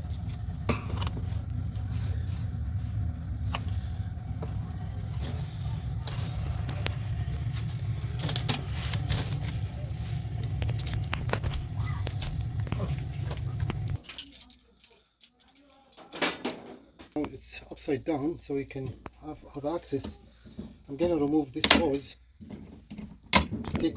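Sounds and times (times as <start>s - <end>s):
low rumble: 0.0s - 14.0s
clicks and knocks of parts handled: 13.6s - 17.3s.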